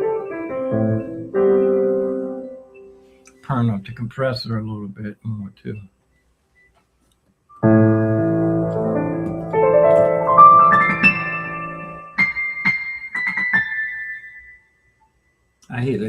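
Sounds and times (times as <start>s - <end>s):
piano playing loudly: 0.0s - 3.1s, 7.5s - 14.7s
piano keys clacking: 7.5s - 14.6s.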